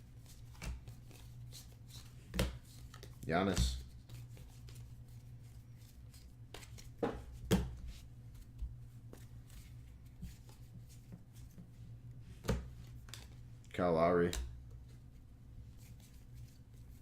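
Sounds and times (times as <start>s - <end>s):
steady low hum: 0.0s - 17.0s
cards clicking and tapping: 12.4s - 13.4s.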